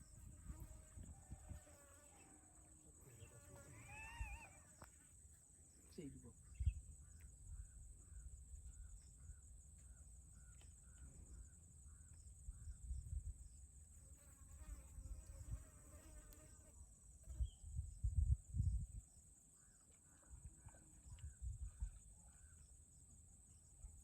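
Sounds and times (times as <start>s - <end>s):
insect chirps: 0.0s - 24.0s
insect drone: 0.0s - 24.0s
animal call: 3.2s - 4.8s.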